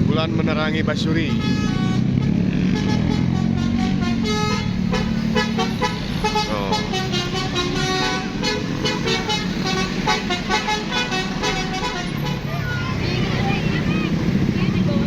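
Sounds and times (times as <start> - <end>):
bus engine running low: 0.0 - 15.0
bus horns playing short tunes: 1.2 - 12.6.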